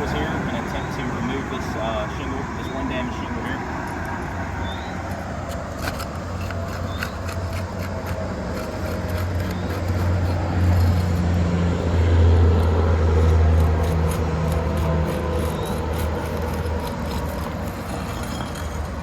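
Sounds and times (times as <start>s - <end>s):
tool scraping under roof shingles: 5.0s - 19.0s.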